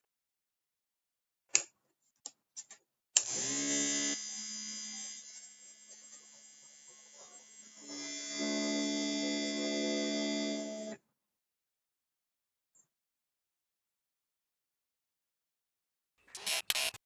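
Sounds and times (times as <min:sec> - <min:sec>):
electric hair clipper buzzing: 0:03.2 - 0:08.1, 0:16.4 - 0:17.0
clicks: 0:16.3 - 0:17.0.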